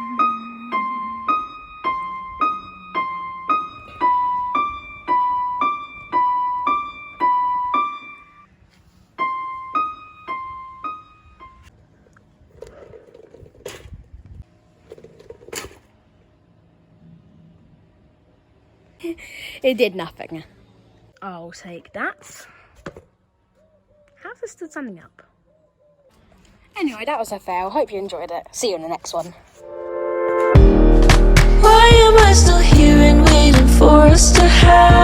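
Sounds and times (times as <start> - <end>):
piano music with high notes: 0.0 - 8.4, 9.2 - 11.7, 29.6 - 33.8.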